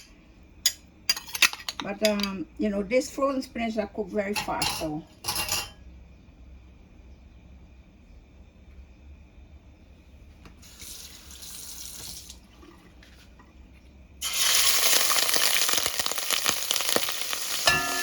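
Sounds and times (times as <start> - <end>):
shrimp sizzling in hot oil: 10.6 - 12.2, 14.2 - 18.0.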